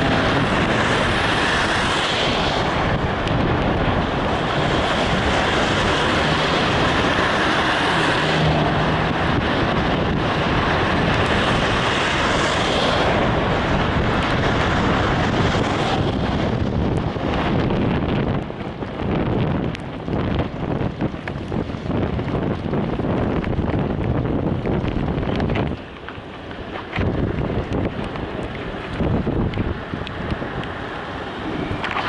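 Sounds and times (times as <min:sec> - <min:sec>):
wind and road noise: 0:00.0 - 0:32.0.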